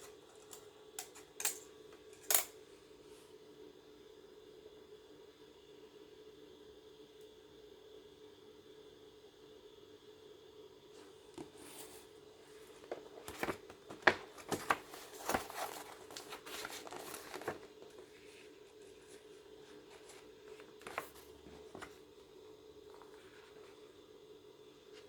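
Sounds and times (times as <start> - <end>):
crinkling and clicking handling: 0.0 - 2.5, 11.0 - 22.1.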